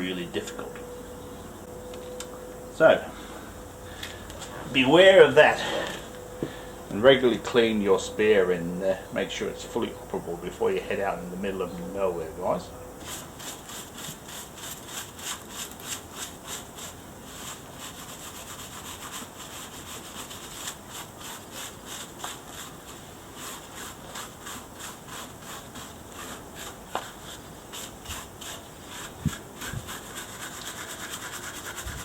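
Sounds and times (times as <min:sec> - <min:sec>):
bristle brush scrubbing tyre: 0:13.0 - 0:32.0.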